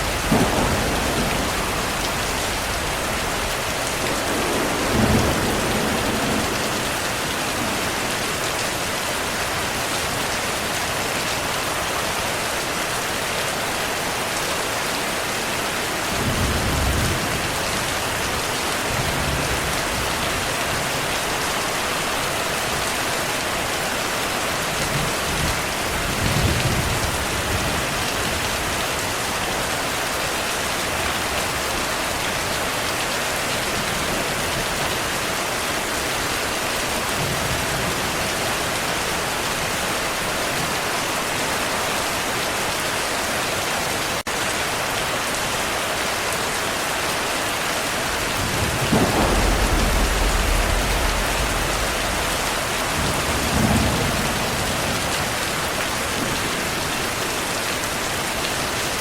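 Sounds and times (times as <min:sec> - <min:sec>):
thunder rumbling: 0:00.0 - 0:08.5, 0:48.0 - 0:57.2
heavy rain: 0:00.0 - 0:59.0.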